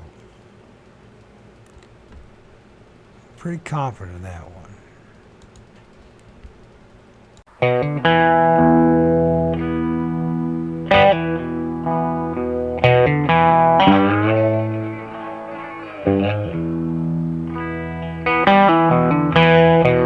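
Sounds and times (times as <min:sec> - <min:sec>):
electric guitar chords: 0:07.5 - 0:20.0.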